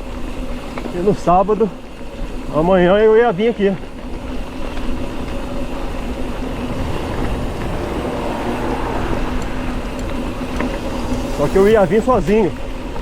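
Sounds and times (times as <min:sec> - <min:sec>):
wind rumbling on microphone: 0:04.8 - 0:13.0.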